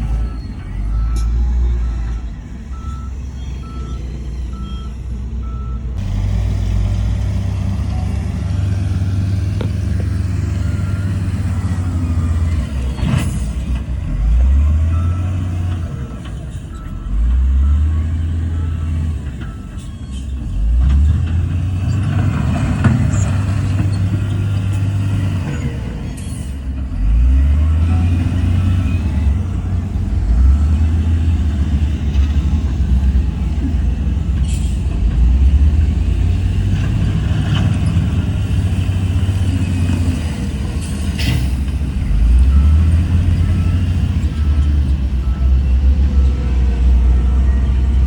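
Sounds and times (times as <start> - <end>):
reversing alarm beeping: 0.0 - 6.0, 7.8 - 12.9, 14.6 - 20.4, 42.1 - 48.0
diesel engine revving under load: 0.0 - 48.0.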